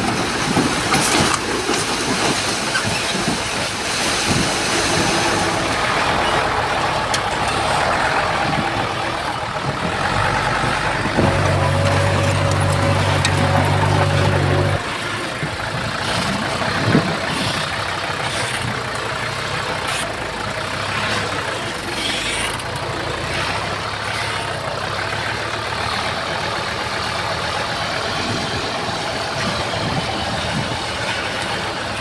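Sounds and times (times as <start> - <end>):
heavy machinery diesel engines: 0.0 - 32.0
loud low engine drone: 4.8 - 21.9.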